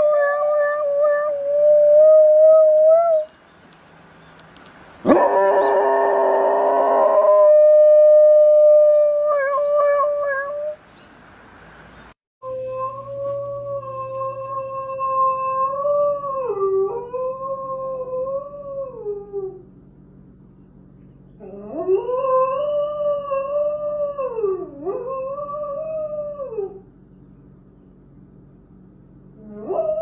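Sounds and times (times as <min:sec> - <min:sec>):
dog howling: 0:00.0 - 0:03.3, 0:05.0 - 0:10.8, 0:21.4 - 0:26.9, 0:29.4 - 0:30.0.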